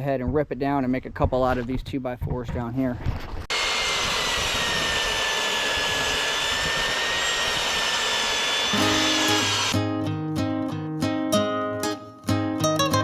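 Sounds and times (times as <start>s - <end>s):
power saw cutting wood: 3.5s - 9.8s
acoustic guitar music: 8.7s - 13.0s.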